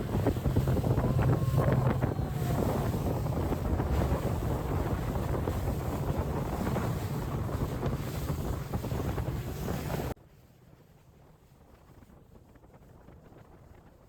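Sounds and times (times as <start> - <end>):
steady low rumble: 0.0 - 9.1
wind buffeting microphone: 0.0 - 10.2.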